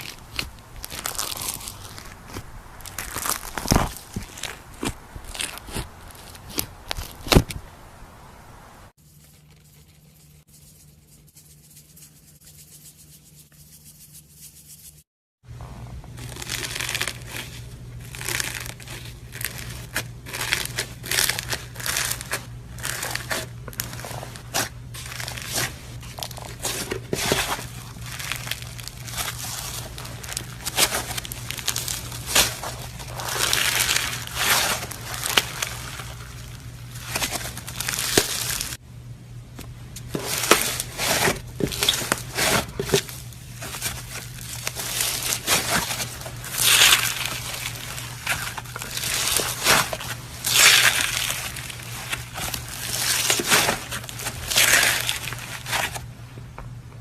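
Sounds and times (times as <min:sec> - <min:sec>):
slime crackling and popping: 0:00.0 - 0:07.5, 0:16.2 - 0:38.8, 0:40.2 - 0:56.0
steady low hum: 0:15.5 - 0:57.0.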